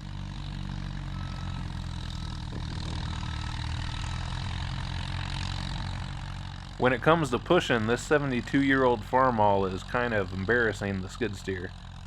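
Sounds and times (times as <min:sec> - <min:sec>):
heavy machine engine running: 0:00.0 - 0:12.0
faint short beeps: 0:01.1 - 0:04.4.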